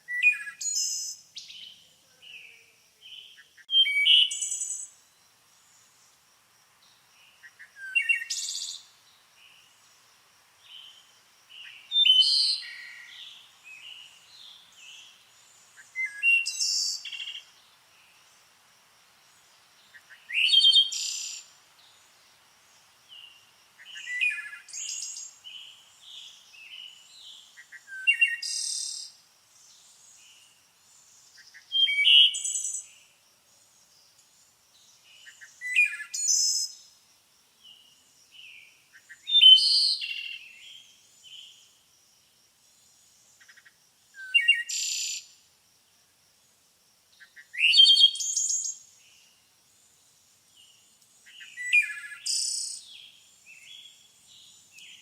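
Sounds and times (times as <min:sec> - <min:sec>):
bird singing: 0:00.0 - 0:06.1, 0:06.8 - 0:09.9, 0:10.6 - 0:18.4, 0:19.9 - 0:22.1, 0:23.1 - 0:33.1, 0:33.7 - 0:37.0, 0:43.3 - 0:45.3, 0:47.2 - 0:49.4, 0:50.5 - 0:55.0.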